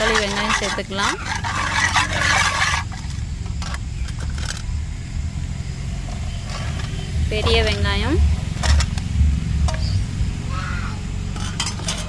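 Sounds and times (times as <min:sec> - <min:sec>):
spoon scraping a bowl: 0:00.0 - 0:04.6, 0:11.3 - 0:12.0
steady low rumble: 0:01.5 - 0:12.0.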